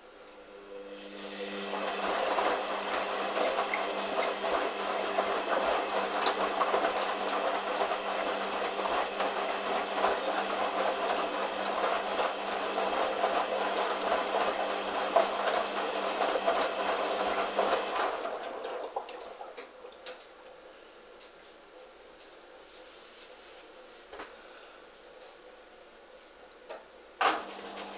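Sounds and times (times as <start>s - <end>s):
washing machine running: 0.5s - 20.2s, 27.2s - 27.9s.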